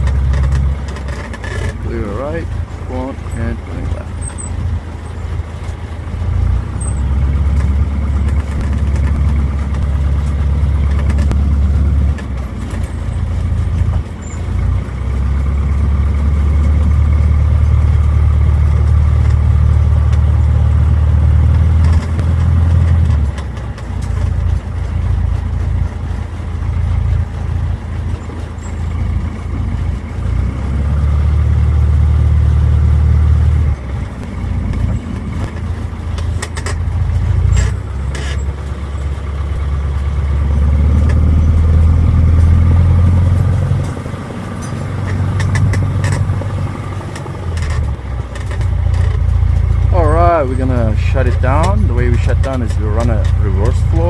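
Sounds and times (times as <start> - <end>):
aircraft engine rumbling: 0.0 - 54.0.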